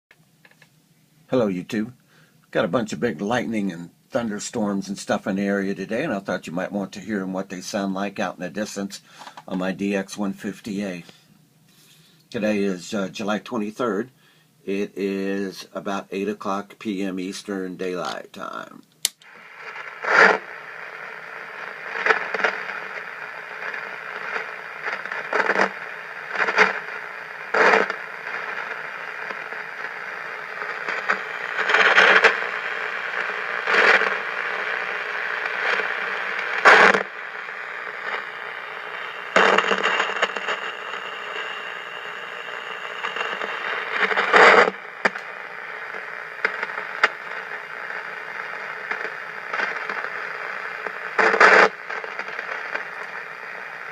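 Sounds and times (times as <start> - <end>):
radio hiss: 1.4 - 53.9
loud crackling static crashes: 15.7 - 53.9.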